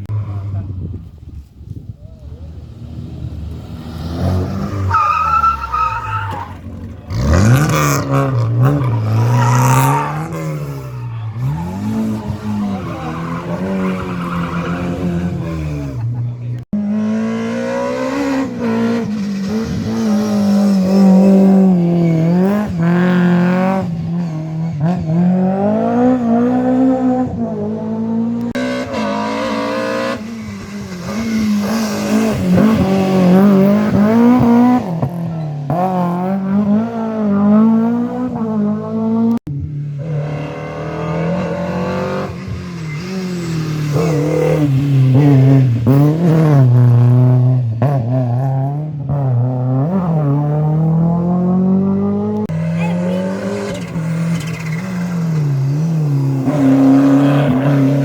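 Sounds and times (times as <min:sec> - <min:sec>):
rally car engines revving: 0:02.1 - 0:58.0.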